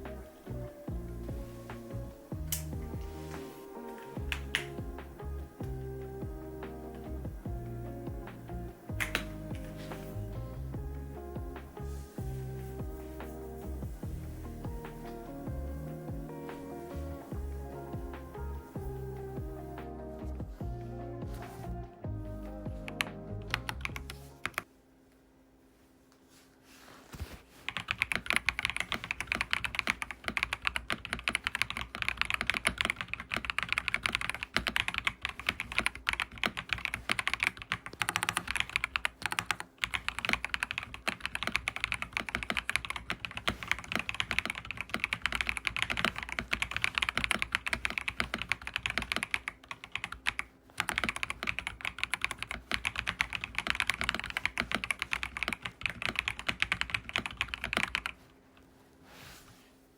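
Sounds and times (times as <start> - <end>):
mechanical keyboard typing: 8.9 - 9.8, 27.7 - 58.2.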